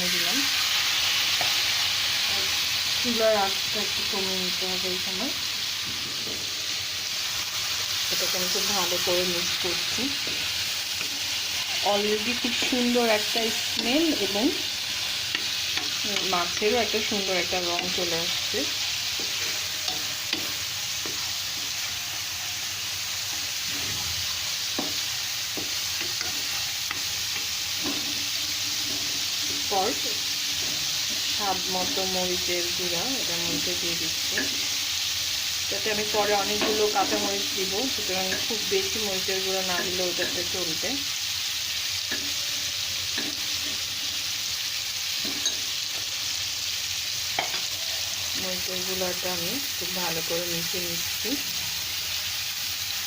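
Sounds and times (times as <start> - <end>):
fish frying in oil: 0.0 - 53.0
spoon tapping and scraping pan: 12.4 - 22.0, 24.6 - 29.7, 34.3 - 34.8, 36.5 - 37.4, 38.2 - 38.7, 42.1 - 42.4, 43.1 - 43.9, 45.2 - 46.1, 47.4 - 47.7.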